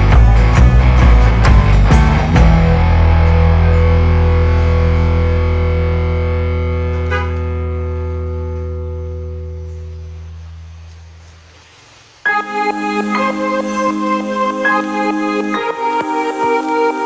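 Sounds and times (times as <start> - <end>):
distorted electric guitar strumming: 0.0 - 10.9.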